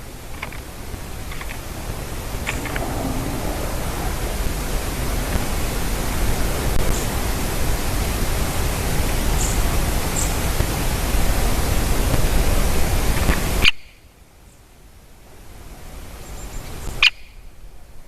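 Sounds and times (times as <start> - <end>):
loud rushing noise: 1.8 - 6.9.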